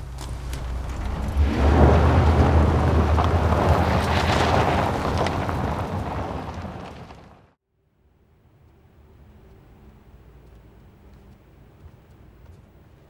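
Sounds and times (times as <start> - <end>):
loud deep rumble: 0.0 - 7.5.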